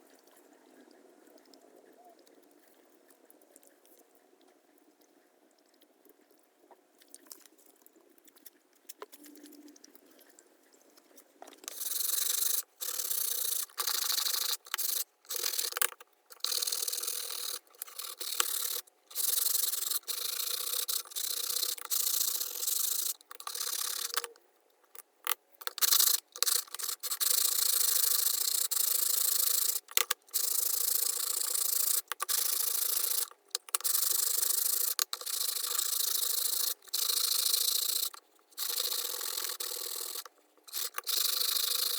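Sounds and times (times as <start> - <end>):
sanding scratchy hiss: 16.5 - 24.2, 25.8 - 41.9.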